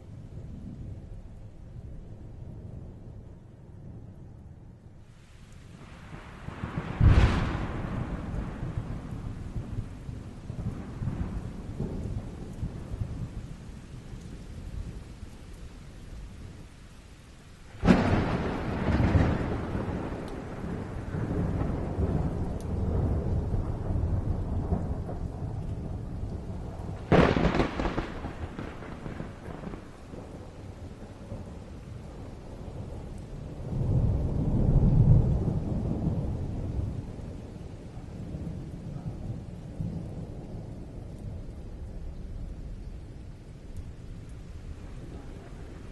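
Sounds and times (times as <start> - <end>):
thunder rumbling: 5.7 - 16.7, 17.7 - 45.9
sharp thunder crack: 6.5 - 9.8, 17.8 - 25.2, 26.9 - 30.4.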